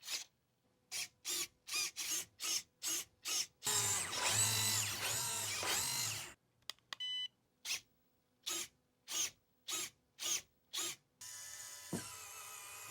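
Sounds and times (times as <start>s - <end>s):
electric motor whining: 3.7s - 6.4s.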